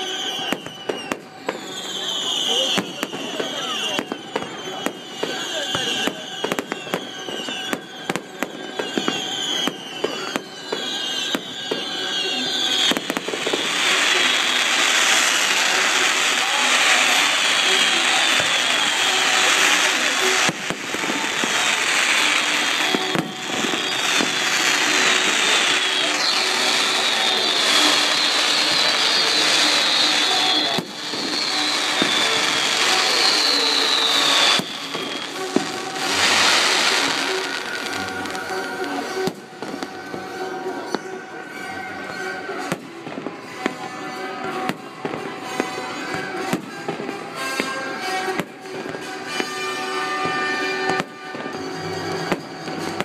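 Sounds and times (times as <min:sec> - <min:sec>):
falling firework whistles: 0:00.0 - 0:41.2
fireworks bangs: 0:00.0 - 0:53.0
fireworks crackling: 0:00.0 - 0:53.0.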